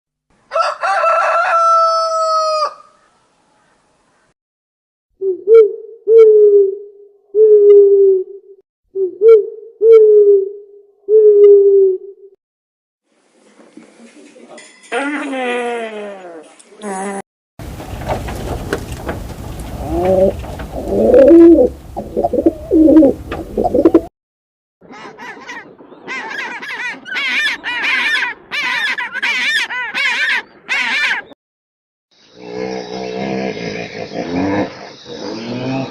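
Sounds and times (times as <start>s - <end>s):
bird hooting call: 5.2s - 12.3s, 19.9s - 24.0s
bird calling: 18.7s - 24.1s, 24.8s - 31.4s.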